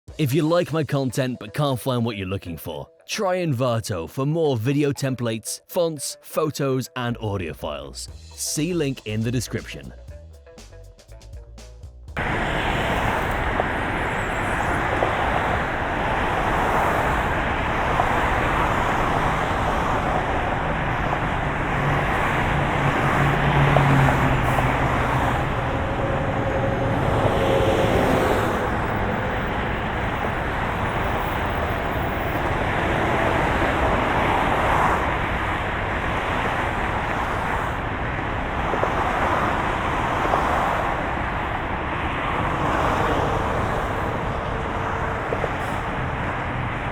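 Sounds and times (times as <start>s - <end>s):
passing cars and tyre noise: 12.2s - 46.9s
vehicle passing close: 12.2s - 46.9s.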